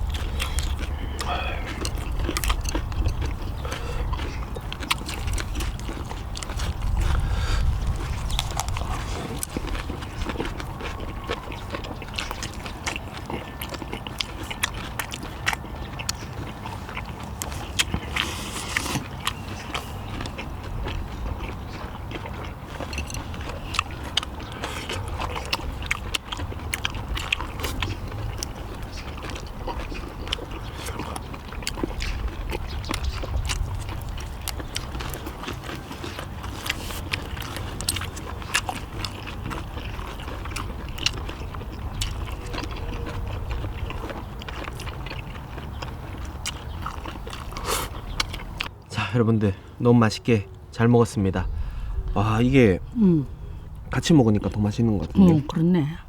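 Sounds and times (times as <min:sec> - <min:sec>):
steady low rumble: 0:00.0 - 0:13.2, 0:51.2 - 0:56.0
people chewing food: 0:00.0 - 0:56.0.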